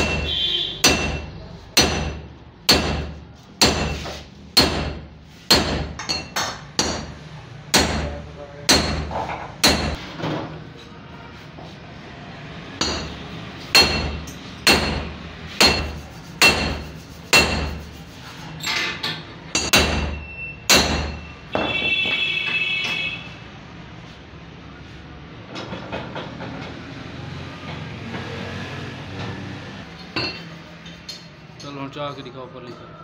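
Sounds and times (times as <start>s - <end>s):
hammer striking metal: 0.0s - 10.0s, 12.8s - 18.0s, 18.6s - 23.1s, 29.9s - 31.8s.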